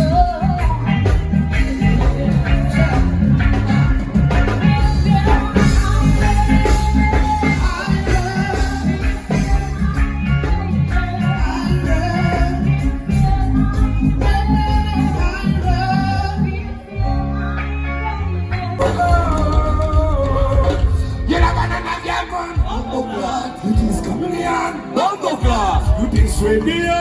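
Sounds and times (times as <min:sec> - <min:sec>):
loud music with heavy bass beat: 0:00.0 - 0:16.5.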